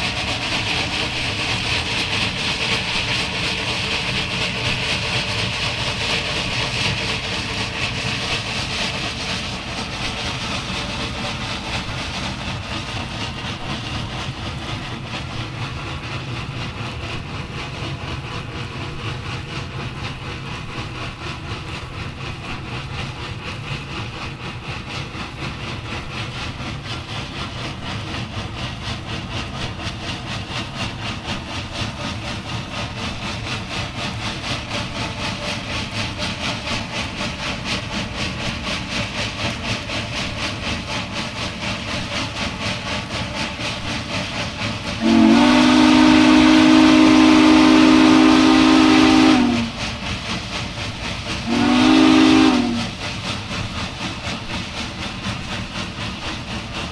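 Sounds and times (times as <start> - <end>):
steam locomotive exhaust beats: 0.0 - 56.9
train rumble: 0.0 - 56.9
steam whistle blast: 45.0 - 49.8, 51.4 - 52.8.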